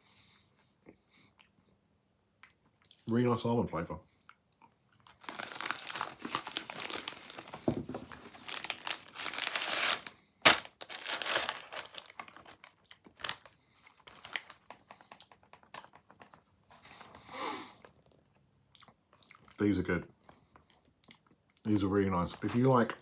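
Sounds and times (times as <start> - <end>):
plastic wrapper crinkling: 5.1 - 16.4.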